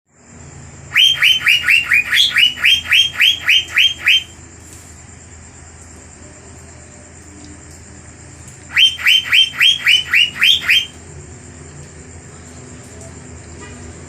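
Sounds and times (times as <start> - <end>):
bird singing whistled notes: 1.0 - 4.4, 8.7 - 11.0.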